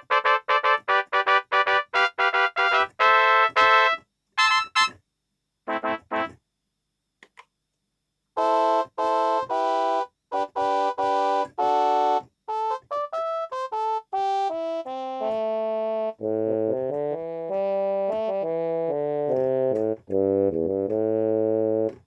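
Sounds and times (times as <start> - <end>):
synthesizer chords and notes: 10.6 - 22.0.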